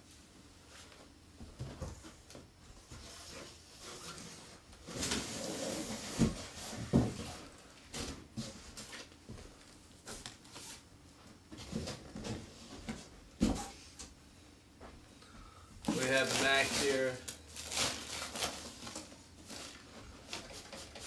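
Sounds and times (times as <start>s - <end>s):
rustling: 15.9s - 21.0s.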